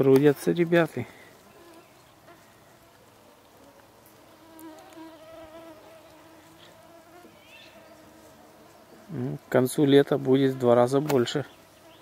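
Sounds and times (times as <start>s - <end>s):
flying insect buzzing: 3.6s - 9.6s.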